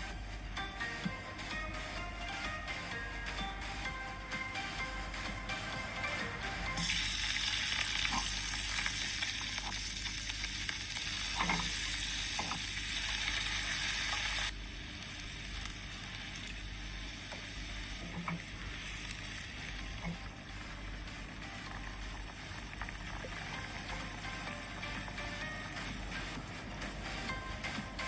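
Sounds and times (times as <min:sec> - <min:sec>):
food sizzling in hot oil: 0:06.8 - 0:26.3.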